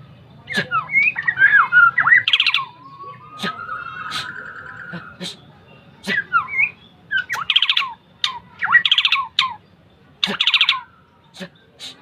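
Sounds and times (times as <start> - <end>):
bird whistling song: 0.5 - 4.9, 6.0 - 11.2.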